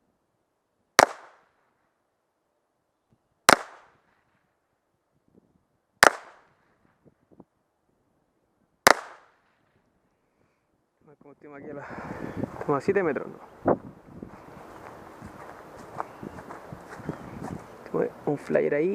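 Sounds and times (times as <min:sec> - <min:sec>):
pistol shots: 0:01.0 - 0:01.4, 0:03.5 - 0:04.0, 0:06.0 - 0:06.5, 0:08.9 - 0:09.4.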